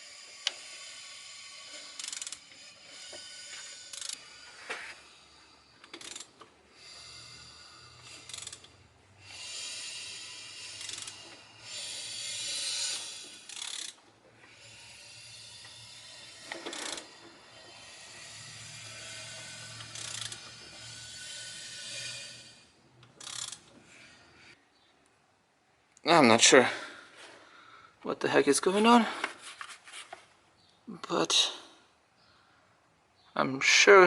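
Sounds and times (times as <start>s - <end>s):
ratchet wrench clicking: 0.0s - 24.2s.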